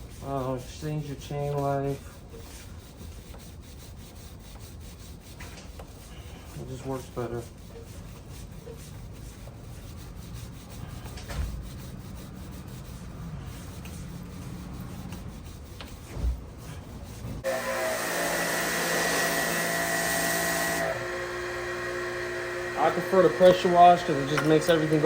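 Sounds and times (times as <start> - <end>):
brush scrubbing a chain: 0.0 - 17.4, 22.8 - 25.0
pressure washer running: 17.4 - 25.0.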